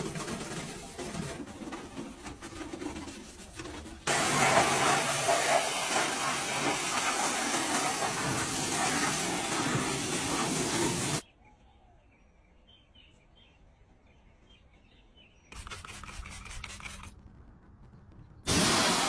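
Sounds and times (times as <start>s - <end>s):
pressure washer spraying: 4.1s - 11.2s, 18.5s - 19.0s.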